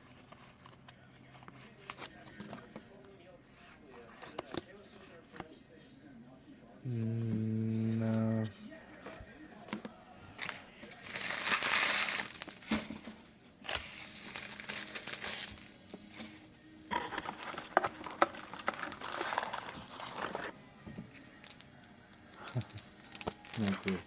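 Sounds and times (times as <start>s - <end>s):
foil wrappers crinkling and tearing: 10.3s - 24.0s.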